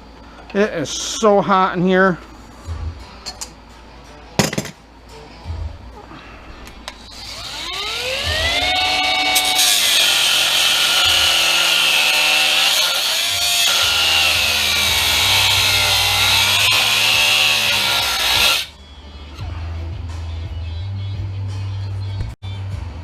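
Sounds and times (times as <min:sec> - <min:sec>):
cutting tool motor whine: 0:07.1 - 0:18.7
tool grinding through aluminum: 0:07.1 - 0:18.7.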